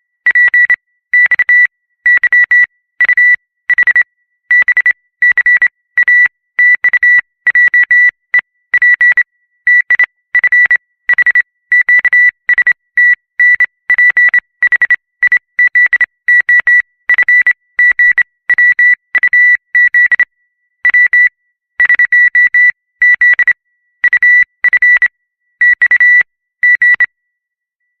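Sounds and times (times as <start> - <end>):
morse code beeps: 8.8 - 27.1.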